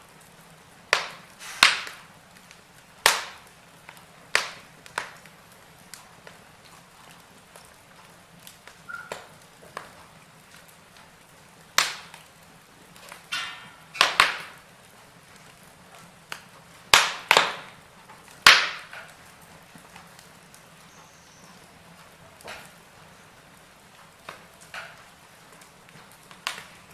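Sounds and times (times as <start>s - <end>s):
campfire wood crackling: 0.0s - 26.9s
faint steady hiss: 0.0s - 26.9s
loud sharp pops: 0.9s - 5.3s, 11.8s - 12.3s, 13.0s - 14.6s, 16.3s - 17.8s, 18.4s - 19.2s.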